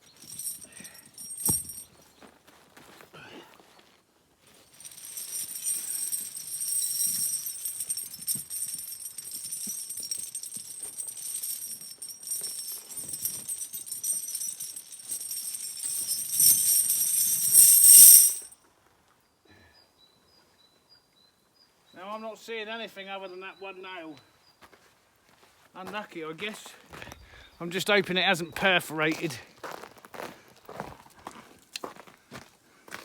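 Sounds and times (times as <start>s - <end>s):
jingling bells: 0.0s - 1.8s, 4.8s - 18.5s
tambourine: 0.0s - 1.8s, 4.8s - 18.5s.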